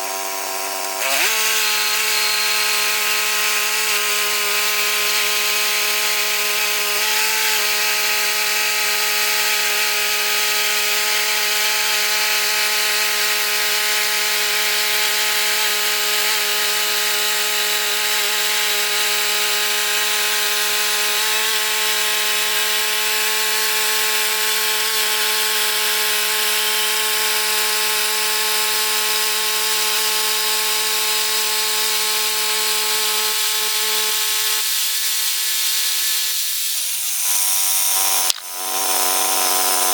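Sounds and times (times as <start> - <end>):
sawmill engine hum: 0.0 - 5.4, 36.6 - 39.9
saw blade cutting log: 0.0 - 22.0, 28.9 - 39.9.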